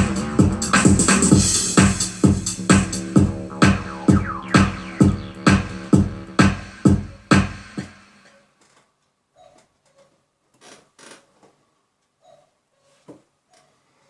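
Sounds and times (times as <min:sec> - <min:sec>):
electronic beat music: 0:00.0 - 0:07.9.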